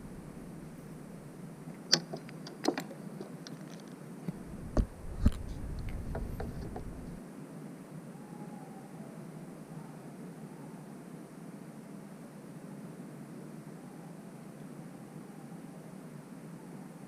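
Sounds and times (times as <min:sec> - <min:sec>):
fishing tackle clicking and knocking: 0:01.9 - 0:03.8, 0:05.8 - 0:07.2.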